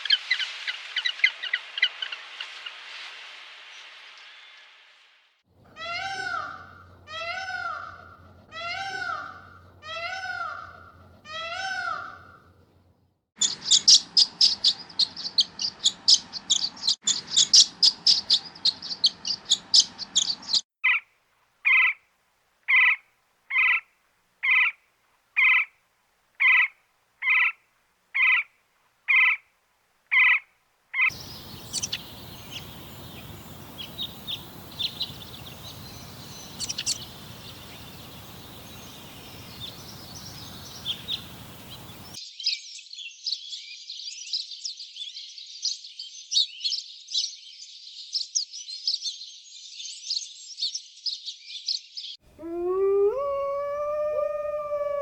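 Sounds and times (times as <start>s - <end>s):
steady outdoor hiss: 30.7s - 42.2s
birdsong: 31.0s - 42.2s, 52.3s - 55.0s
rapid high bird chirping: 31.1s - 42.2s
rising and falling animal calls: 31.1s - 42.2s, 52.3s - 55.0s.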